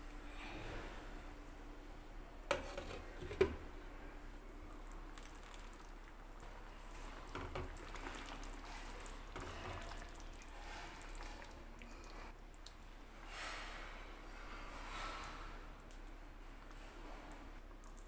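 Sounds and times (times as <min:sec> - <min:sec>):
curry squelching in a pot: 0:02.5 - 0:13.2.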